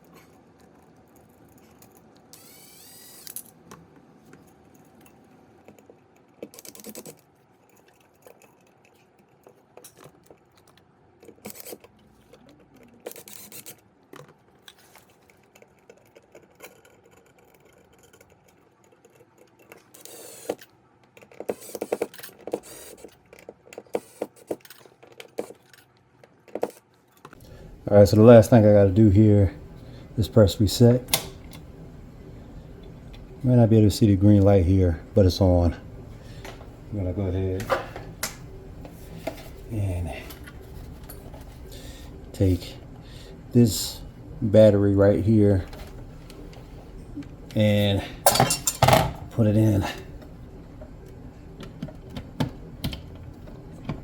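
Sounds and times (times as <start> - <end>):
whirring bursts: 2.3 - 3.4
screwdriver scraping metal screws: 11.3 - 11.9, 13.0 - 13.8, 19.8 - 20.6, 21.2 - 23.2.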